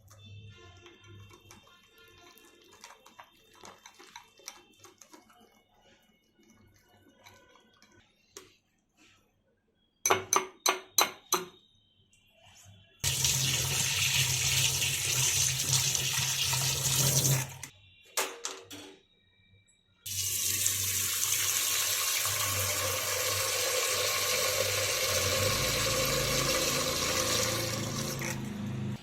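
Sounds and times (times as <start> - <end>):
tap water running into sink: 13.0 - 17.7, 20.1 - 28.6.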